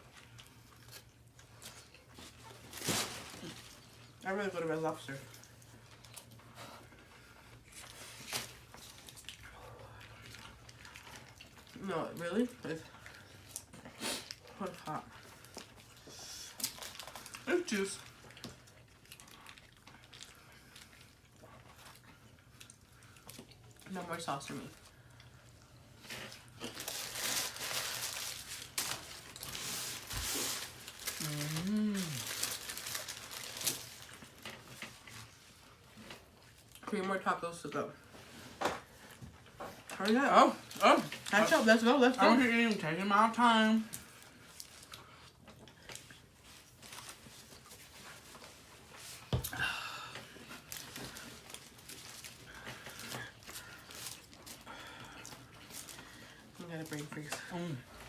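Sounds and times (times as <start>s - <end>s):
person chewing food: 0.0s - 2.8s, 5.3s - 11.8s, 12.9s - 23.9s, 24.8s - 27.0s, 43.9s - 56.6s
paper wrapper crinkling and tearing: 16.6s - 18.0s, 26.3s - 35.0s, 50.6s - 54.7s.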